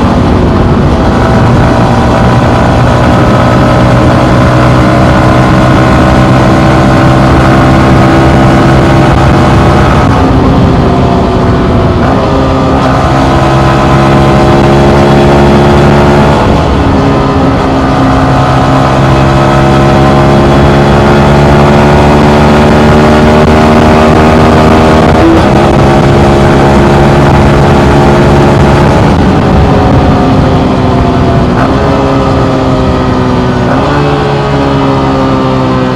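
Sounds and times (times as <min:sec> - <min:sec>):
motorcycle engine running: 0:00.0 - 0:35.9.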